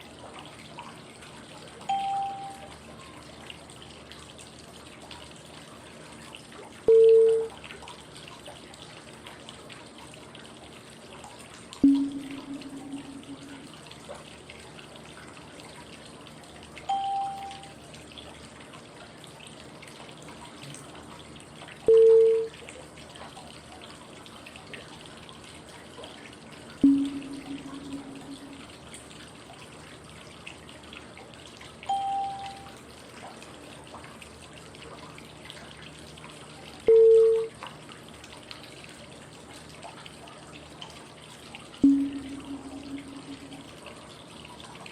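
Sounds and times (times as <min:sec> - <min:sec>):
running water white noise: 0:00.0 - 0:44.9
short cue tones: 0:11.8 - 0:13.7.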